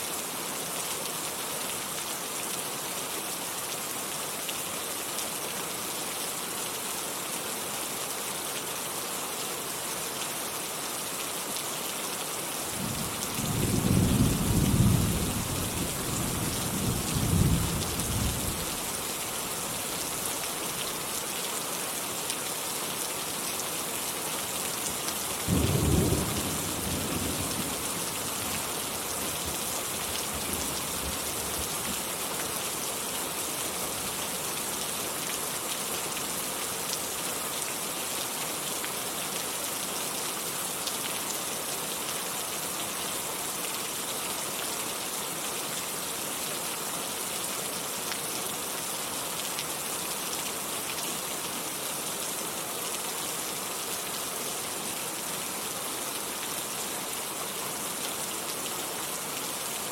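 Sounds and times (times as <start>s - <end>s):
heavy rain falling: 0.1s - 59.9s.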